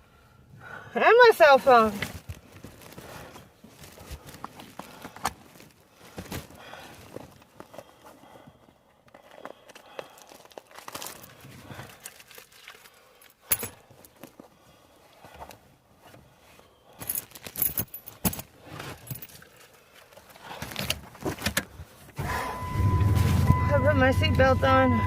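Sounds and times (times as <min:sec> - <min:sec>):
metallic jangling and clicking: 0:13.2 - 0:13.8, 0:17.0 - 0:19.5.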